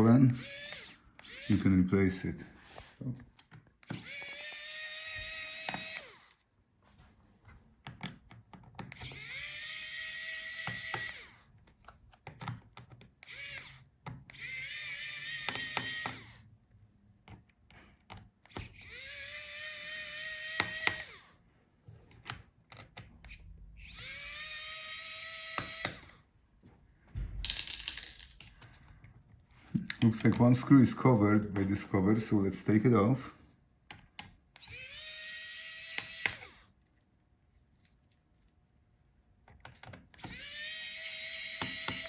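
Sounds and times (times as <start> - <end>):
electric screwdriver motor whine: 0.4 - 1.6, 3.8 - 6.4, 8.9 - 11.4, 13.2 - 16.4, 18.5 - 21.4, 23.3 - 26.2, 34.6 - 36.7, 40.2 - 42.0.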